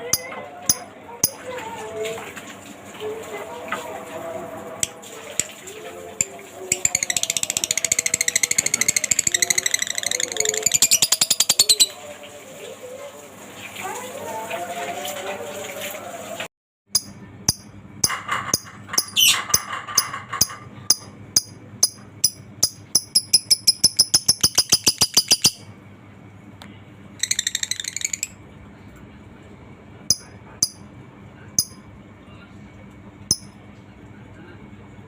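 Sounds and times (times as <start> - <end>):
lovebird chirping and chattering: 6.7 - 11.9, 18.5 - 20.1, 21.4 - 25.6, 27.2 - 28.4
buzzy bird trill: 6.7 - 12.0, 21.8 - 25.6, 27.2 - 28.4.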